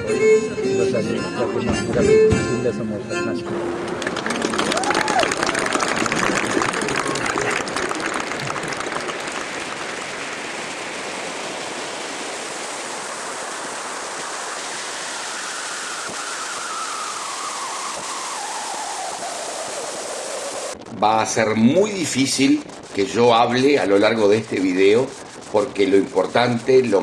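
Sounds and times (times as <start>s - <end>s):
wind: 0.0s - 27.0s
water passing boat: 3.6s - 21.0s
faint tone sliding downward: 12.3s - 20.8s.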